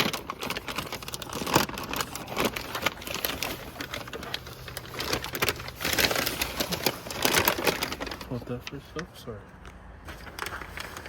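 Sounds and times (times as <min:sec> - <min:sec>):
plastic packaging crinkling: 0:00.0 - 0:09.1, 0:10.1 - 0:11.0.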